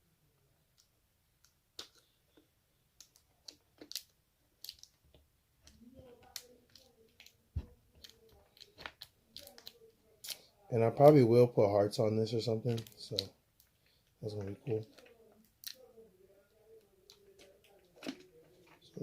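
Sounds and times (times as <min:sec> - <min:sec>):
fingers clicking on plastic film: 0:00.8 - 0:10.4.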